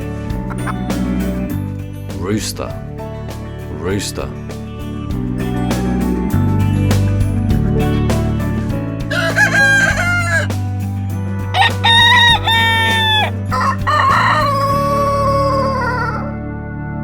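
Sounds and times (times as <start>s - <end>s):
rooster crowing: 9.1s - 10.5s, 11.6s - 16.4s.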